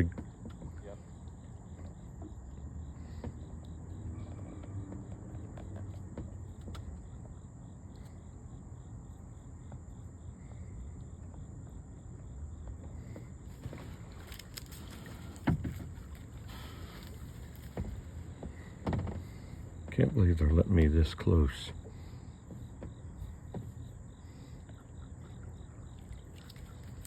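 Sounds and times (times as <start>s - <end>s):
crickets trilling: 0.0s - 27.0s
slower cricket chirp: 0.0s - 27.0s.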